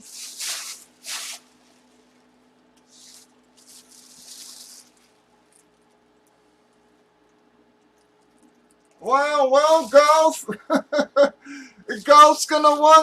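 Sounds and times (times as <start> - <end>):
hissy rustles and scrapes: 0.0 - 2.1
faint steady hum: 0.0 - 13.0.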